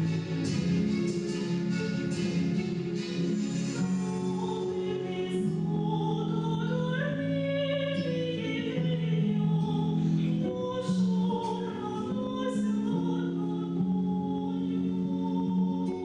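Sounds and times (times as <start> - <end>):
sustained instrumental accompaniment: 0.0 - 10.6
woman singing: 3.8 - 16.0.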